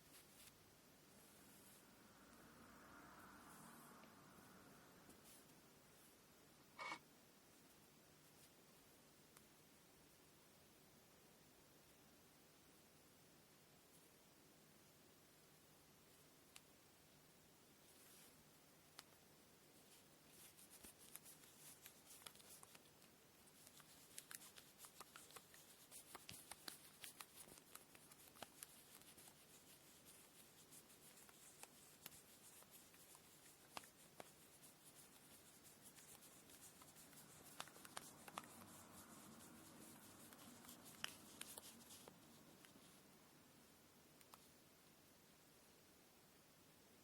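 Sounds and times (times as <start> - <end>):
thread rustling and rubbing: 0.0 - 1.9, 17.8 - 18.4, 19.8 - 43.0.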